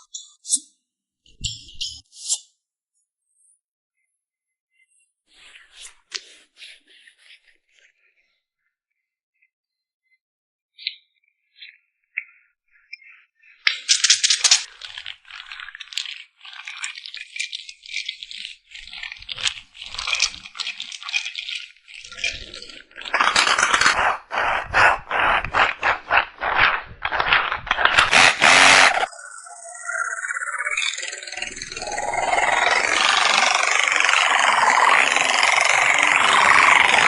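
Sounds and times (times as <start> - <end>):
rattling and scraping handling noise: 22.1 - 29.1.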